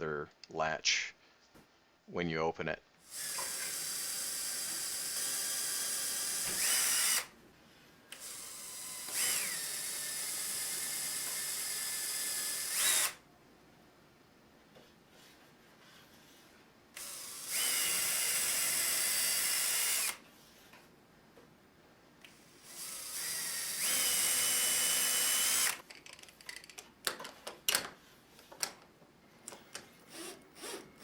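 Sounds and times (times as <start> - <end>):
power drill boring: 3.1 - 7.3, 8.2 - 13.2, 17.0 - 20.2, 22.3 - 25.8, 30.1 - 31.0.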